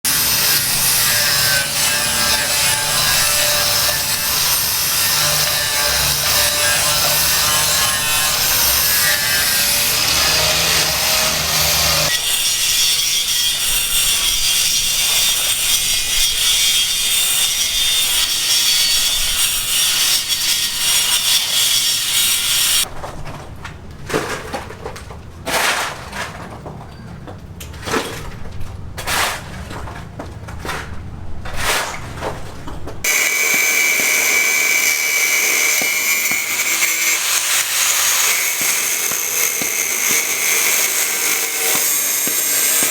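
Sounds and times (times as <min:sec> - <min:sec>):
loud sawing: 0:00.0 - 0:22.9, 0:33.0 - 0:42.9.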